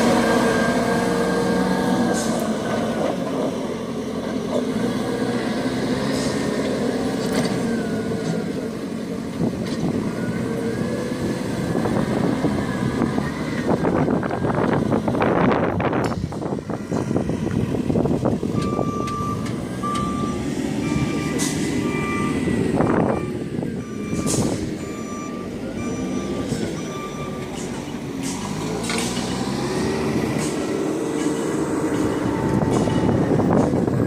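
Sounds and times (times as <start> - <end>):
heavy engine running: 0.0 - 34.0.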